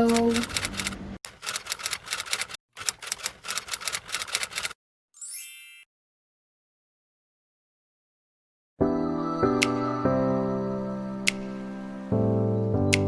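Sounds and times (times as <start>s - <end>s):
rapid typewriter-style clicking: 0.0s - 4.8s.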